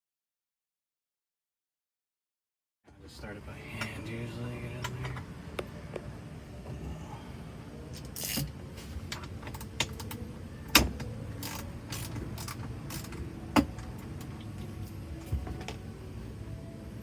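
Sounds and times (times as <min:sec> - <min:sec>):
low steady hum: 0:02.9 - 0:17.0.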